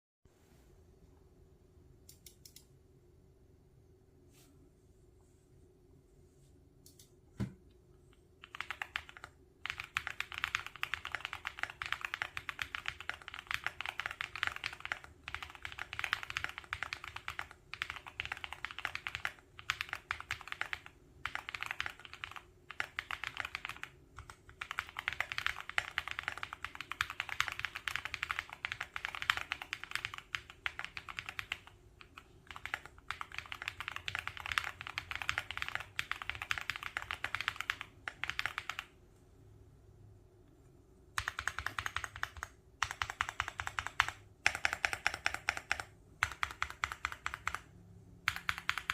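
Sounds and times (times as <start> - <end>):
fast mechanical keyboard typing: 8.4 - 38.9, 41.1 - 48.9.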